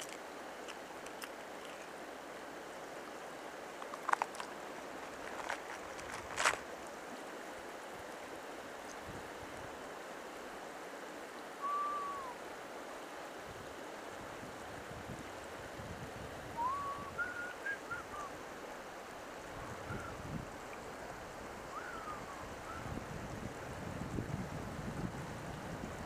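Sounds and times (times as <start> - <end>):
river water rushing: 0.0 - 23.9
whistled notes: 11.6 - 12.4, 16.6 - 18.3.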